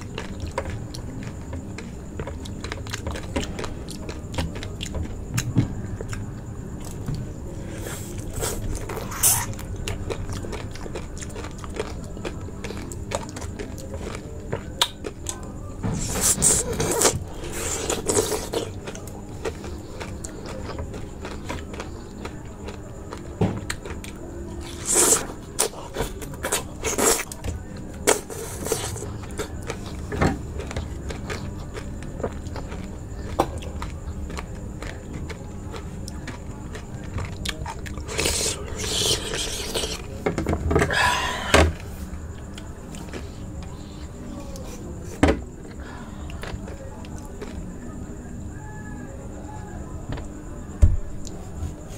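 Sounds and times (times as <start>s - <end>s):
close-miked eating clicks: 8.2s - 15.6s, 17.0s - 40.1s, 45.6s - 47.7s.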